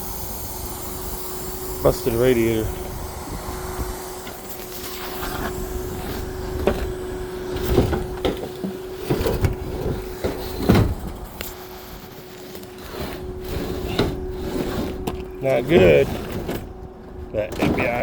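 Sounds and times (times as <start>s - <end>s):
forklift hum: 0.0s - 18.0s
metal clunks and knocks: 5.0s - 11.5s, 13.2s - 18.0s.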